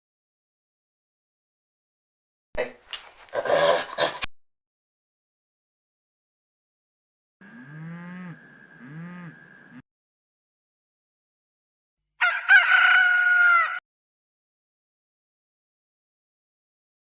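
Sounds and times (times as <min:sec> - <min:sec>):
rooster crowing: 0:12.2 - 0:13.8.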